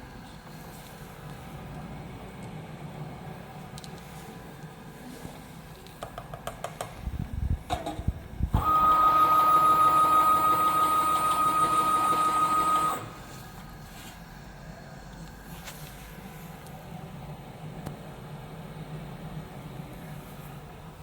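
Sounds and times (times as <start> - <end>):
machine clicks and knocks: 7.7 - 8.2
motor high whine: 8.3 - 13.4.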